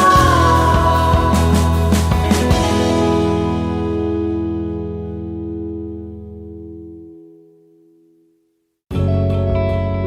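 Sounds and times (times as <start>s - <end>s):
bass: 0.0s - 7.2s, 8.9s - 10.0s
sustained guitar chords: 0.0s - 8.0s.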